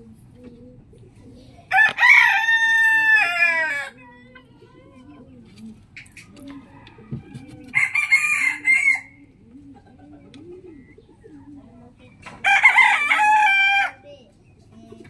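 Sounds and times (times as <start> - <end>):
chicken clucking: 0.0 - 15.0
rooster crowing: 1.7 - 3.9, 6.6 - 9.2, 12.4 - 14.0.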